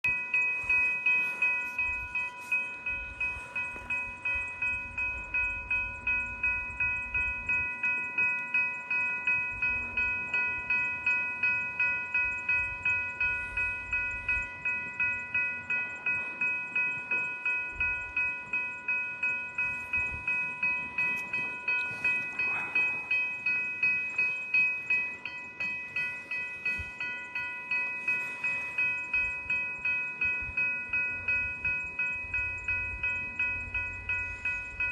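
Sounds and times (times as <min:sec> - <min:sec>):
level crossing bell ringing: 0:00.0 - 0:34.9
train rumbling: 0:00.0 - 0:34.9.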